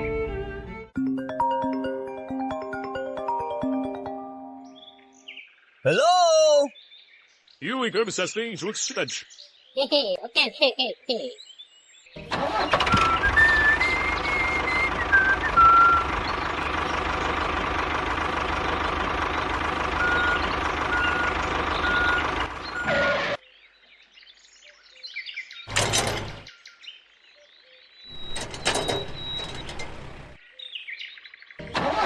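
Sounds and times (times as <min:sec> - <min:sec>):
machine running: 0:28.2 - 0:30.4.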